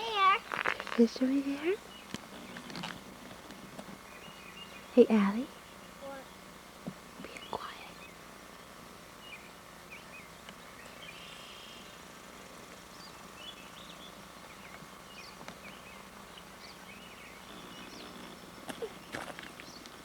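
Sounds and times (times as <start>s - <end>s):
steady background hiss: 0.0s - 20.0s.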